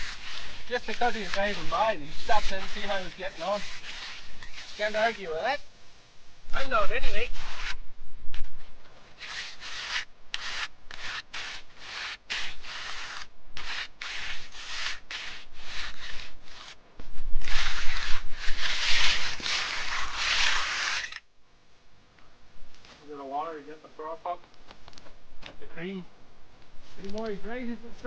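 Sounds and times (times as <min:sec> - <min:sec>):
hand float scraping wet concrete: 0:00.0 - 0:05.4, 0:07.1 - 0:07.8, 0:09.2 - 0:16.8, 0:17.4 - 0:21.2.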